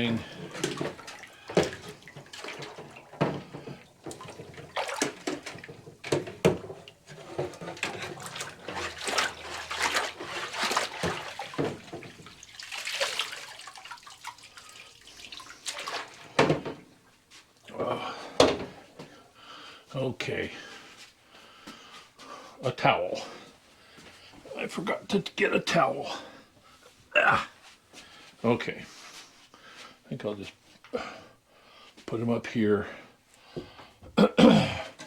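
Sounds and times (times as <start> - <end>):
filters knocking against tub: 0.0 - 13.7
water sloshing in a bathtub: 0.0 - 19.4.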